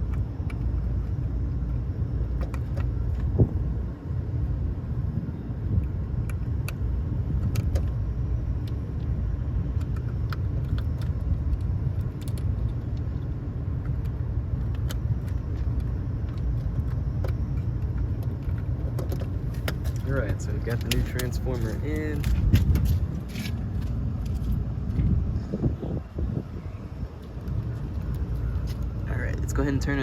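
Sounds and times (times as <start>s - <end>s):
low mechanical rumble: 0.0s - 30.0s
small metallic clicks and rattles: 9.8s - 25.0s.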